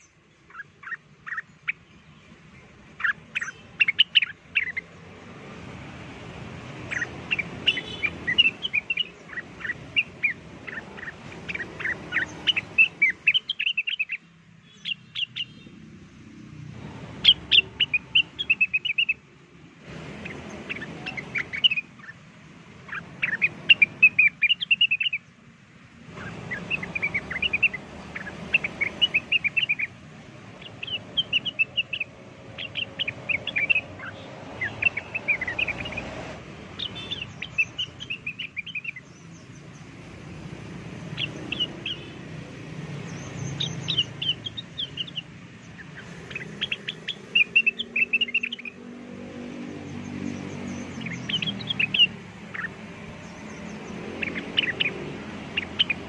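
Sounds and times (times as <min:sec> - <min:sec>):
bird chirping and whistling: 0:03.0 - 0:04.8, 0:06.8 - 0:14.2, 0:17.2 - 0:19.2, 0:20.2 - 0:22.2, 0:22.9 - 0:25.2, 0:26.2 - 0:30.0, 0:30.6 - 0:39.5, 0:41.1 - 0:42.2, 0:43.0 - 0:48.8, 0:50.6 - 0:56.0.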